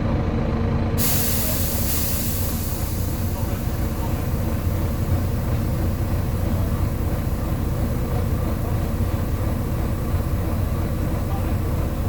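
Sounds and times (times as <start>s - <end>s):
bus diesel engine droning: 0.0s - 12.0s.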